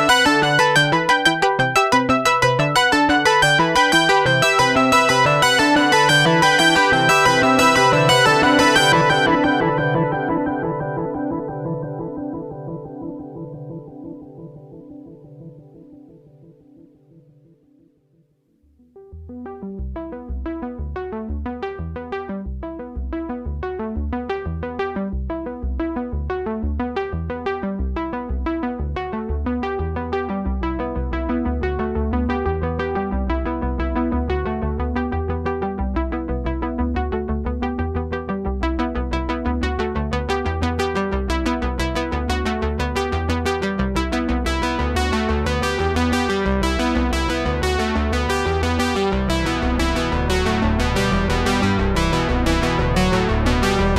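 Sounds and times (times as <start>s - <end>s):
upbeat electronic keyboard tune: 0.0s - 17.0s, 18.8s - 53.9s
steady bass beat: 49.1s - 53.9s.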